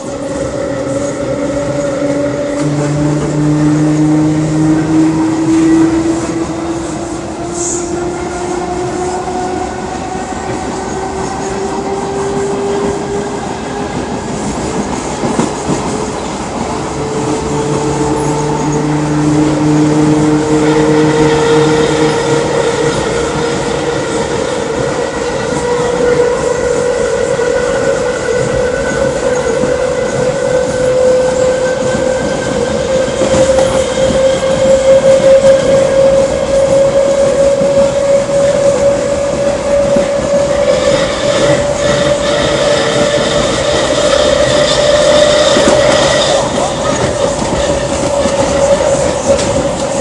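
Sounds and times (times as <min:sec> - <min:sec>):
electric train motor whine: 0:00.0 - 0:50.0
rail and wheel noise: 0:00.0 - 0:50.0.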